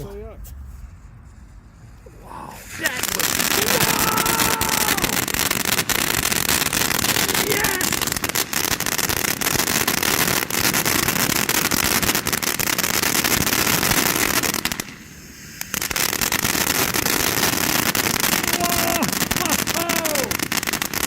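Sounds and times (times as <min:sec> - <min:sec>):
firework spray hiss: 0:00.0 - 0:09.6
firework crackling pops: 0:00.0 - 0:21.0.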